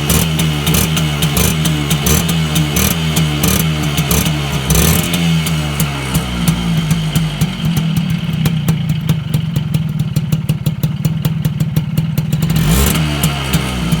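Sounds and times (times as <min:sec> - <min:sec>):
engine revving: 0:00.0 - 0:09.4, 0:12.2 - 0:14.0
two-stroke engine idling: 0:00.0 - 0:14.0.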